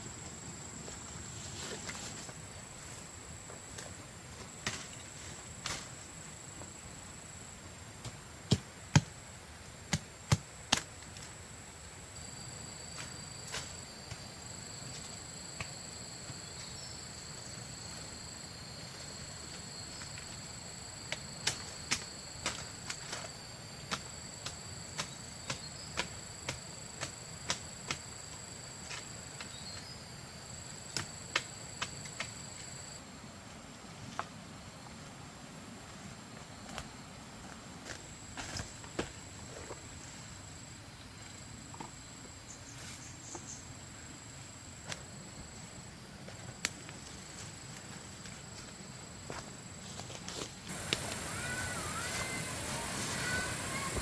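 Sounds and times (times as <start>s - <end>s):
high drone of insects: 0.0s - 54.0s.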